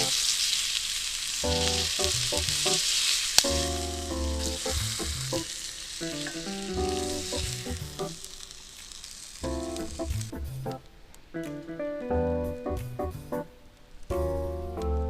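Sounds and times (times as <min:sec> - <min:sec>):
food sizzling in a skillet: 0:00.0 - 0:10.6
music with plucked notes: 0:09.5 - 0:13.5, 0:14.1 - 0:15.0.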